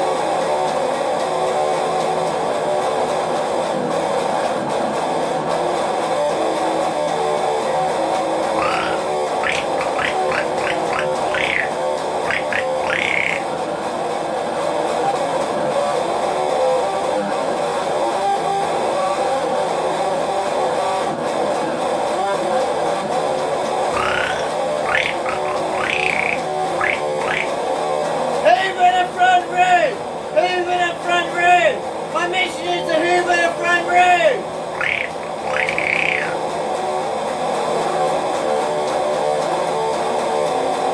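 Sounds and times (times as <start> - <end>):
quick rising chirps: 8.5 - 13.5, 24.0 - 27.5, 34.8 - 36.4.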